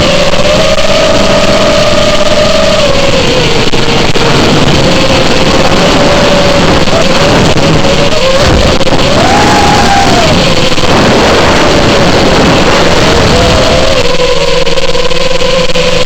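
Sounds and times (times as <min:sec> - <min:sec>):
drone motors whining: 0:00.0 - 0:16.0
loud rushing noise: 0:02.8 - 0:14.7.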